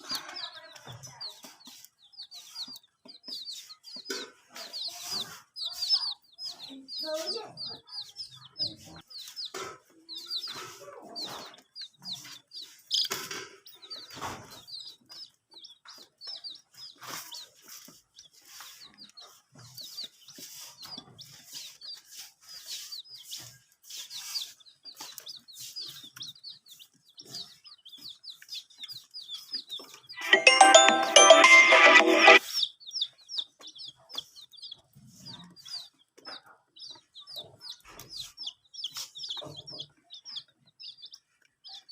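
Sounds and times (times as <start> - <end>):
chicks peeping: 0.0 - 41.9.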